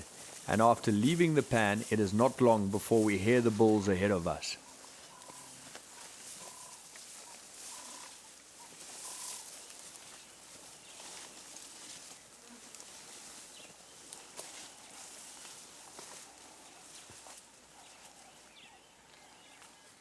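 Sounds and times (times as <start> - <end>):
short high bird calls: 7.6 - 9.5.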